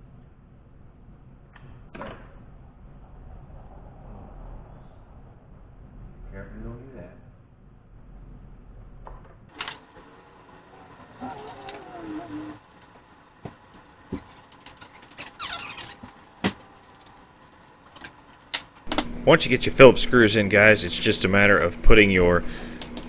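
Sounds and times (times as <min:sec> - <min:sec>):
squeaky scraping of screws: 0:14.8 - 0:16.2.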